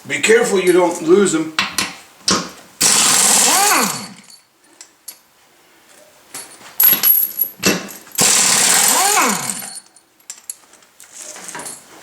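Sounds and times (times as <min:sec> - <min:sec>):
impact wrench hammering: 0:01.7 - 0:04.4, 0:07.6 - 0:09.8
light metal clinks and knocks: 0:05.9 - 0:08.2, 0:09.6 - 0:12.0.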